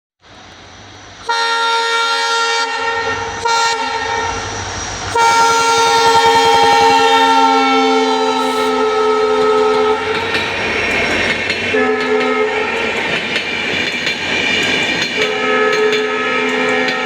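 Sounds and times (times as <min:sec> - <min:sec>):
train rumble: 0:00.2 - 0:17.0
locomotive horn blast: 0:01.3 - 0:04.4, 0:05.1 - 0:10.3, 0:11.7 - 0:12.7, 0:15.3 - 0:17.0.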